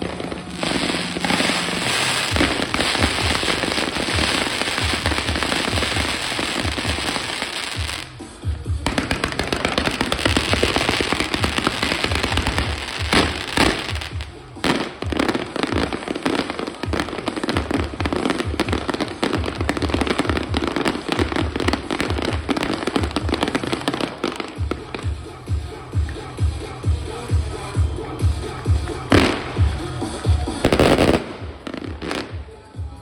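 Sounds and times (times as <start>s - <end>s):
sharp firework bangs: 0.0s - 8.1s, 8.8s - 25.0s
fireworks crackling: 0.0s - 33.0s
music with low beat: 0.0s - 33.0s.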